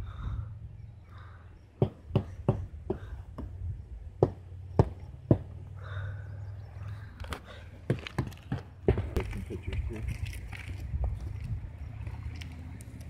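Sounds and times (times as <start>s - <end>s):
steady low hum: 0.0s - 13.0s
sharp knocks: 1.8s - 3.6s, 4.2s - 5.6s.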